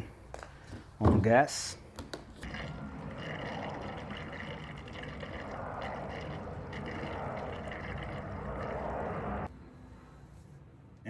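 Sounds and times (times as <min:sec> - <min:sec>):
gasoline pouring into fuel tank: 0:02.5 - 0:09.5.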